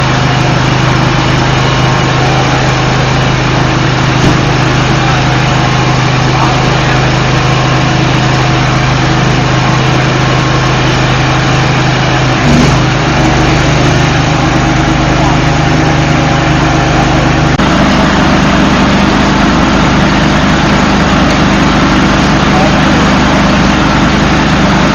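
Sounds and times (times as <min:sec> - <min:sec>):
heavy rain: 0:00.0 - 0:24.9
low engine hum: 0:00.0 - 0:24.9.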